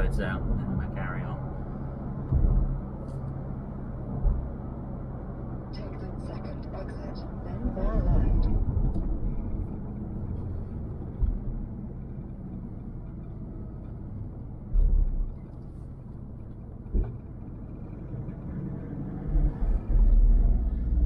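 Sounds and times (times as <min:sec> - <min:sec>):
road and tyre noise in car: 0:00.0 - 0:21.0
heavy low thump: 0:02.2 - 0:03.0, 0:11.1 - 0:11.8.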